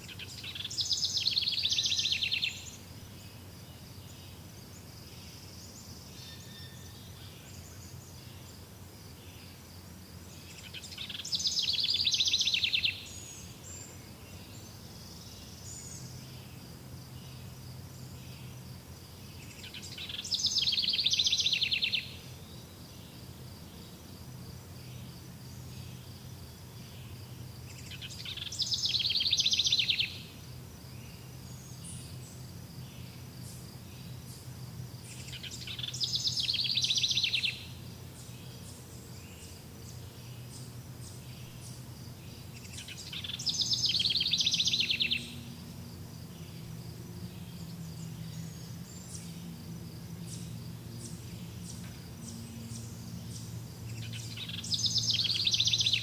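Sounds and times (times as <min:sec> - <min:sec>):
songbird trilling: 0:00.0 - 0:02.8, 0:10.6 - 0:13.9, 0:19.4 - 0:22.4, 0:27.7 - 0:30.4, 0:35.1 - 0:41.8, 0:42.4 - 0:45.6, 0:50.2 - 0:56.0
faint low hum: 0:00.0 - 0:56.0.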